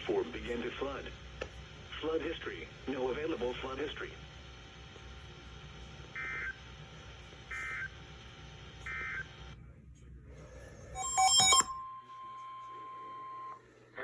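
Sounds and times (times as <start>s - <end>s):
radio hiss and hum: 0.0s - 11.6s
stepping electronic alarm: 6.2s - 6.6s, 7.5s - 7.9s, 8.9s - 9.3s, 11.0s - 13.6s
steady warning alert tone: 11.0s - 12.0s.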